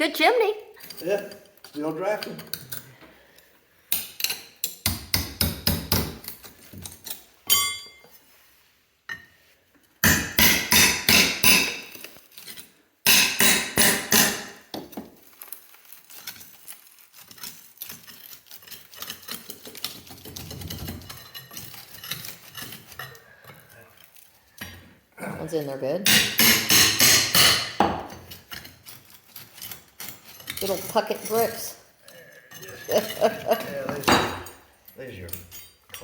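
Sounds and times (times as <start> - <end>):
clinks of brick and debris: 3.9 - 8.2, 10.0 - 24.8, 26.1 - 36.0
hammering on bricks: 4.8 - 6.2, 10.0 - 11.8.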